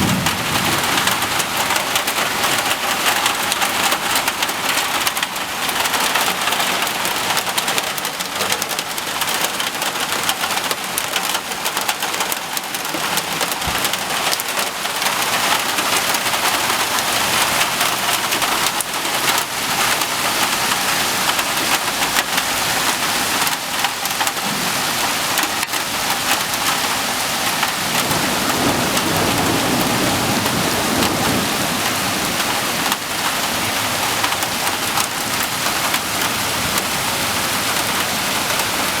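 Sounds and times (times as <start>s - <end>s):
thunder rumble: 0.0s - 4.4s, 24.4s - 26.7s, 27.8s - 33.0s
heavy rain on hard surface: 0.0s - 39.0s.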